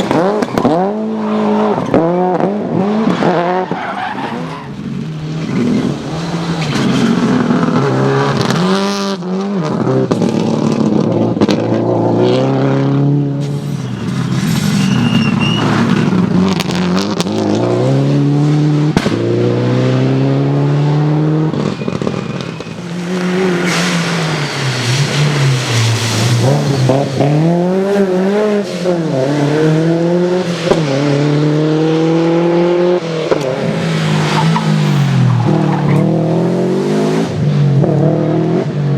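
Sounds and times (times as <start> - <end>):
rally car engine revving: 0.0 - 38.9
tyres on gravel: 21.6 - 28.1.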